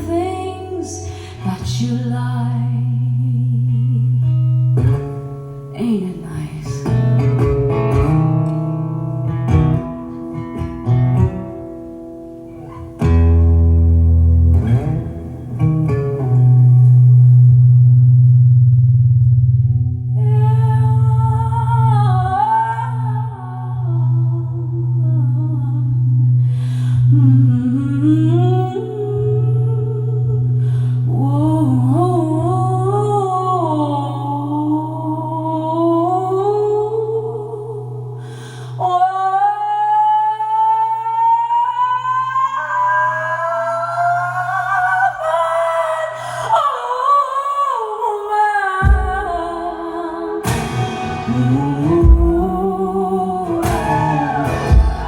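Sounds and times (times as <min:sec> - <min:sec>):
plucked guitar notes: 0:02.5 - 0:31.7, 0:48.8 - 0:55.0
deep low guitar notes: 0:13.0 - 0:21.4.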